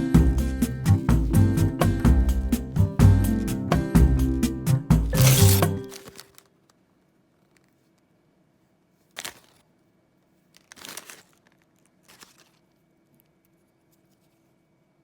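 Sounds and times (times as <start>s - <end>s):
plastic packaging crinkling and tearing: 5.2s - 6.8s, 9.0s - 13.3s.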